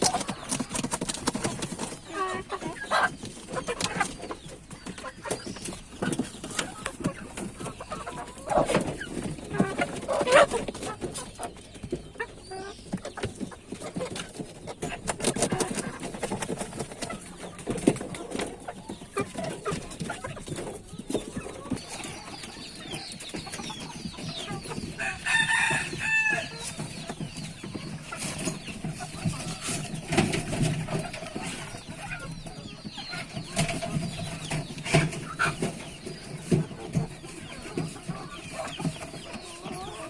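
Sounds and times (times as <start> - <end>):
chickens clucking: 0.0 - 40.0
chicken pitched call: 24.5 - 26.8.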